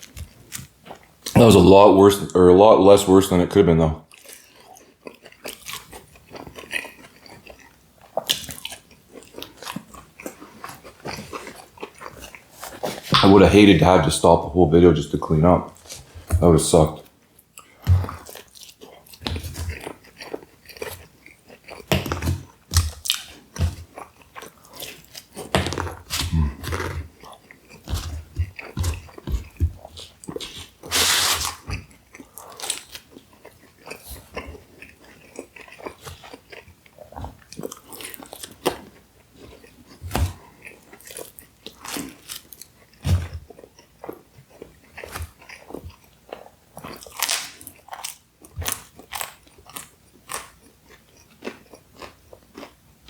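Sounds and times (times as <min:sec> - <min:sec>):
chewing and mouth smacks: 0:04.1 - 0:13.6, 0:15.7 - 0:52.8
crunchy bite: 0:24.7 - 0:33.1, 0:46.8 - 0:50.6.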